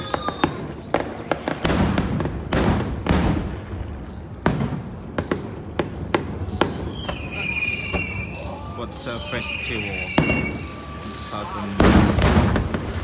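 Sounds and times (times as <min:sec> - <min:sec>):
firework bangs and pops: 0:00.0 - 0:08.4, 0:10.0 - 0:10.7, 0:11.8 - 0:13.0
crackling firework bursts: 0:00.0 - 0:13.0.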